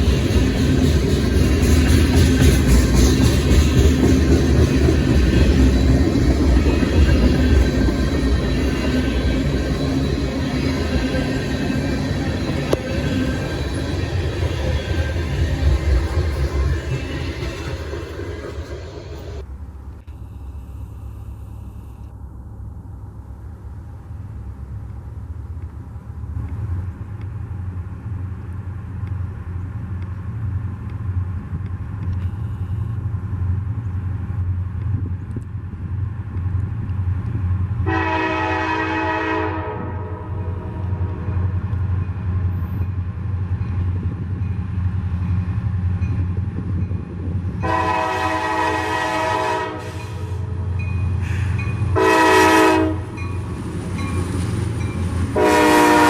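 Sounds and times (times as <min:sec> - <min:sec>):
locomotive engine rumble: 0:00.0 - 0:56.0
train air horn blasts: 0:37.8 - 0:41.5, 0:47.6 - 0:53.2, 0:55.4 - 0:56.0.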